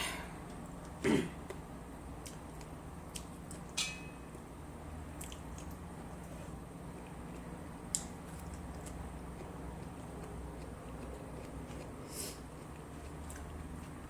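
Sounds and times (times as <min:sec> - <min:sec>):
steady low hum: 0:00.0 - 0:14.0
chewing crispy fried fish: 0:06.9 - 0:14.0.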